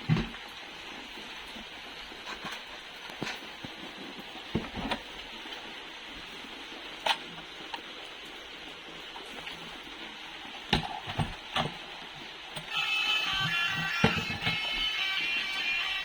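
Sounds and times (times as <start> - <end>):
plastic toys clicking and knocking: 12.6 - 15.0.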